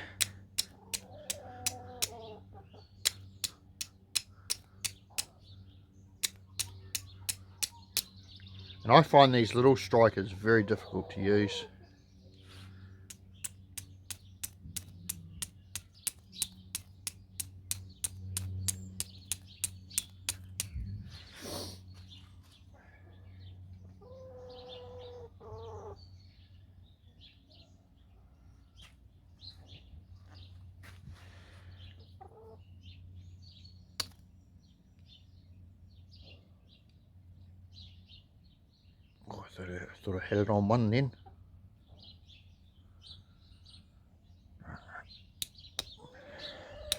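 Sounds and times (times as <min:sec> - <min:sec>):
steel striker hitting flint: 0:00.0 - 0:02.2, 0:03.0 - 0:05.4, 0:06.2 - 0:08.2, 0:13.1 - 0:20.8, 0:34.0 - 0:34.2, 0:45.4 - 0:46.0
small birds chirping: 0:00.0 - 0:46.9.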